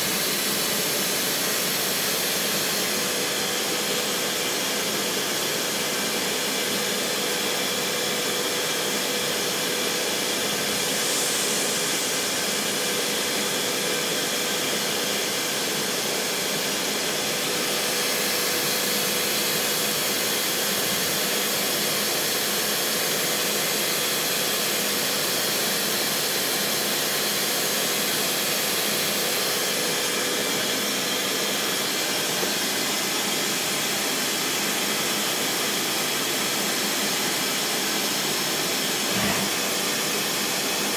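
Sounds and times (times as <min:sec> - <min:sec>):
machining center whirring: 0:10.0 - 0:15.7.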